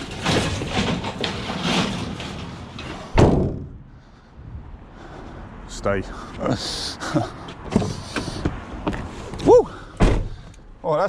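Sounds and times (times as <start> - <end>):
rustling and clattering: 0.0 - 3.9
vehicle door slamming: 3.1 - 3.8, 9.4 - 10.5.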